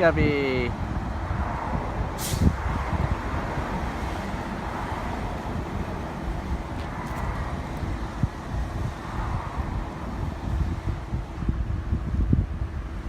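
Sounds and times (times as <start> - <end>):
traffic rumble: 0.0 - 13.0
short hiss: 2.2 - 2.5.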